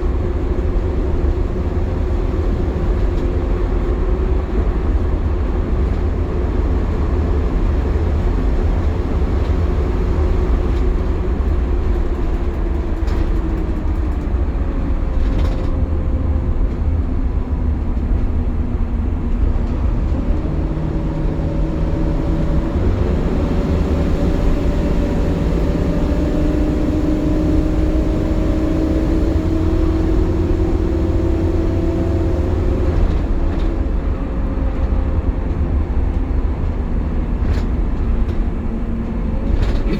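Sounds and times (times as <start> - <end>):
bus engine rumble: 0.0 - 39.9
cooling fan whine: 12.8 - 39.9.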